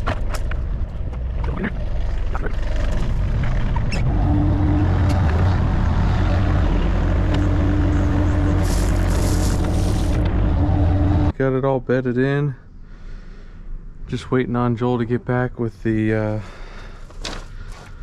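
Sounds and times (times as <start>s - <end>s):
engine whine: 0.0s - 11.5s
digger engine running: 0.4s - 11.3s.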